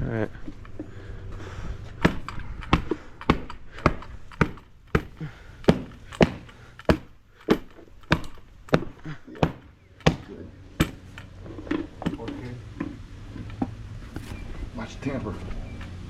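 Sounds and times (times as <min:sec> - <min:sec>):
hand tamper thudding on rubber mats: 0:01.8 - 0:14.4.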